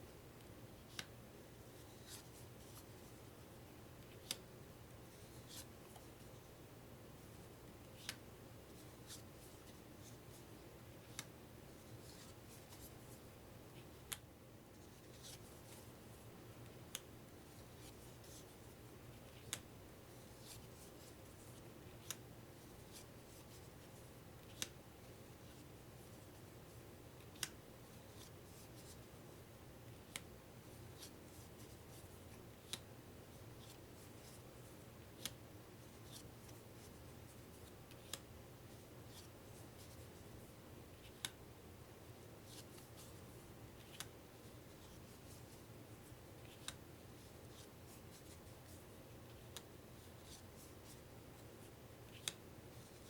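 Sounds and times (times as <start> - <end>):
cards sliding and rustling: 11.0 - 13.1, 14.8 - 15.9.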